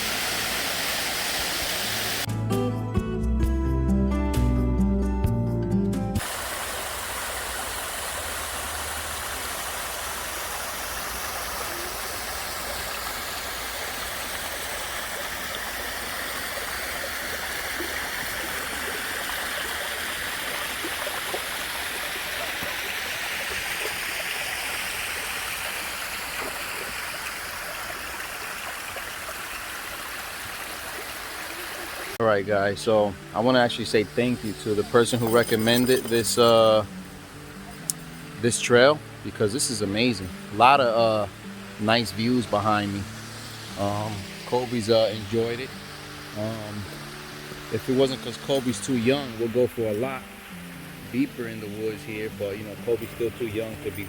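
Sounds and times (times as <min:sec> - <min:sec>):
rush of flowing water: 0:00.0 - 0:02.3, 0:06.2 - 0:54.0.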